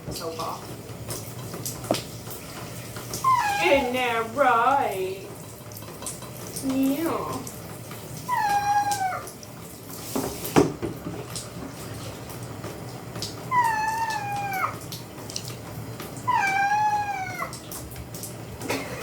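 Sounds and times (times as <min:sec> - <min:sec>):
cat meowing: 0:03.2 - 0:03.9, 0:08.3 - 0:09.3, 0:13.5 - 0:14.8, 0:16.3 - 0:17.6.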